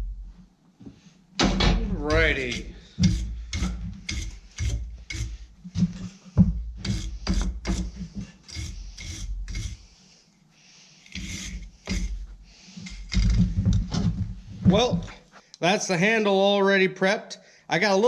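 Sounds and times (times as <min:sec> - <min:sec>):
hand file rasping on steel: 0:02.0 - 0:05.6, 0:06.8 - 0:10.0, 0:11.0 - 0:13.4.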